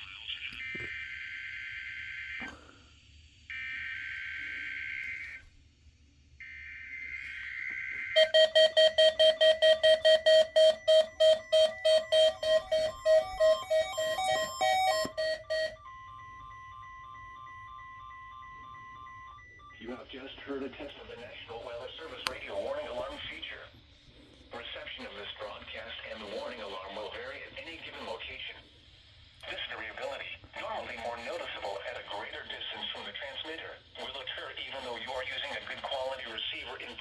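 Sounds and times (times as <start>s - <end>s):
steady warning alarm tone: 3.5s - 5.5s, 6.4s - 23.6s
alarm beeping: 6.4s - 23.2s.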